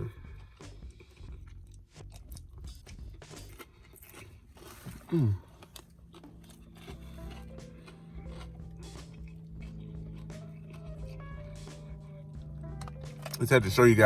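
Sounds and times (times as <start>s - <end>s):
chewing and crunching food: 0.0s - 14.0s
low vocal sound: 5.0s - 5.6s.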